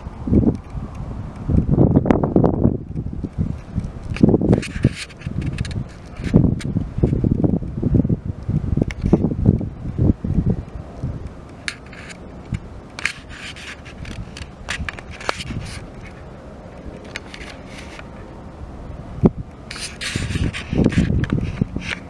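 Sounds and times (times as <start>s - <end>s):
wind gusts on microphone: 0.0s - 22.0s
light scrapes and clicks: 3.2s - 7.5s, 10.6s - 18.3s, 19.7s - 22.0s.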